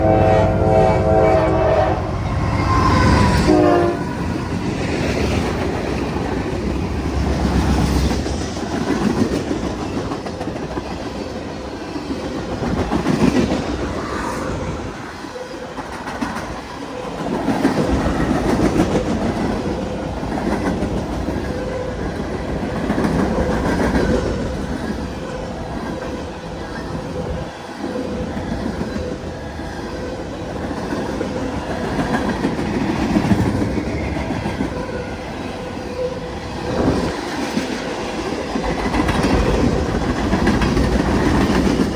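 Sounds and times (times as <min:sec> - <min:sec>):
locomotive air horn: 0:00.0 - 0:04.2
train rumble: 0:00.0 - 0:41.9
wheels clacking over rail joints: 0:15.2 - 0:41.9.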